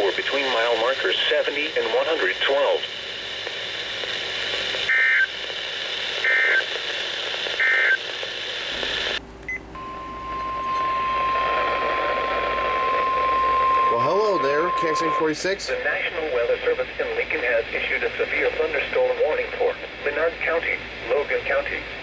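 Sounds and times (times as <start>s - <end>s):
steady radio alert tone: 9.8s - 21.8s.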